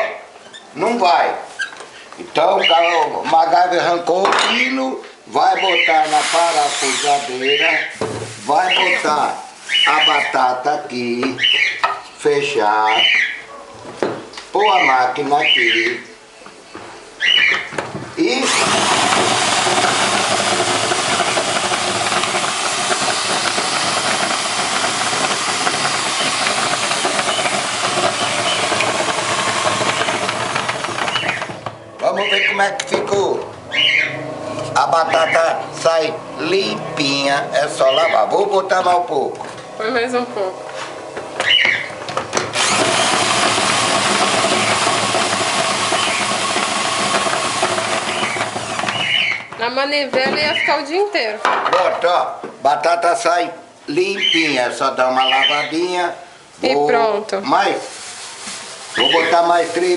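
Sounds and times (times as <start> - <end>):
potatoes scraping in rotating drum: 5.4 - 10.8, 18.2 - 39.2, 40.8 - 51.1, 56.7 - 59.9
screwdriver motor whirring: 6.0 - 7.6, 18.4 - 31.5, 42.4 - 49.4.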